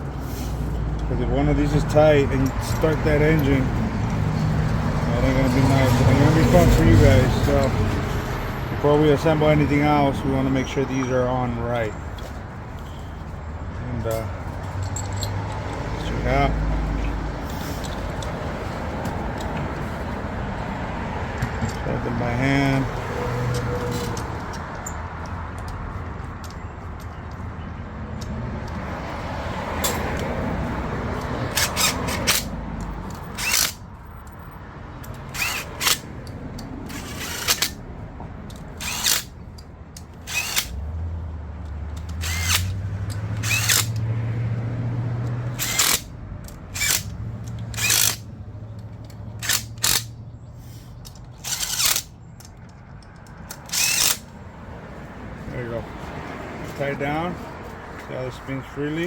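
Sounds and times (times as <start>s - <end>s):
cordless power driver bursts: 40.3s - 40.7s, 42.2s - 42.7s, 43.4s - 44.0s, 45.6s - 46.1s, 53.6s - 54.2s.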